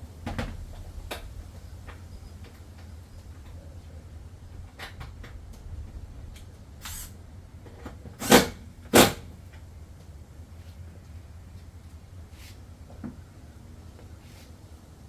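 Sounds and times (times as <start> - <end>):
sharp knocks of hard parts: 8.2 - 9.3.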